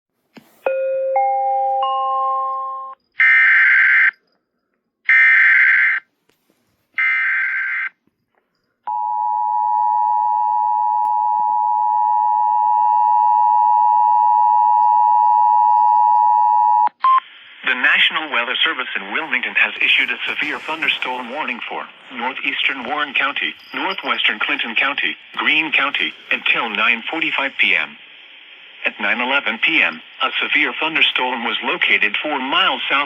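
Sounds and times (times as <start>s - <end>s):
buzzy data tones: 19.1s - 31.4s.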